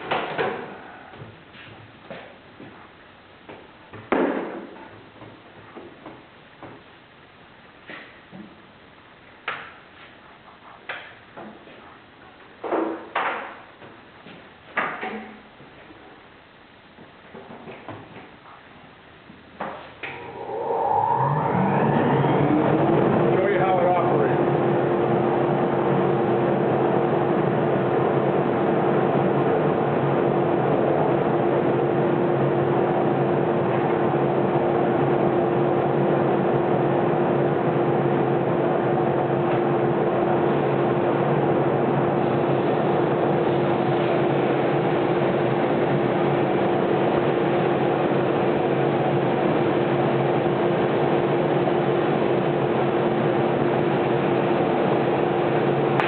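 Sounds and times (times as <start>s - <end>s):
lathe sander whirring: 20.2s - 24.6s.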